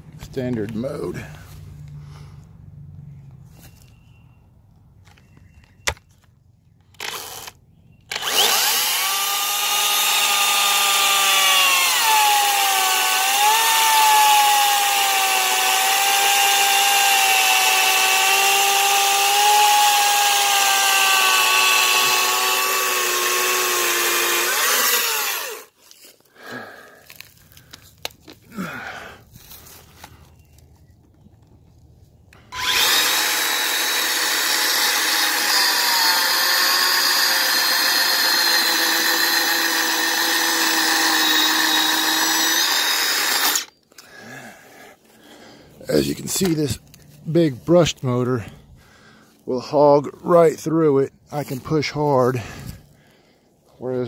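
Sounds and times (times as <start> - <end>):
electric chainsaw cutting wood: 7.0 - 25.8, 32.4 - 43.8.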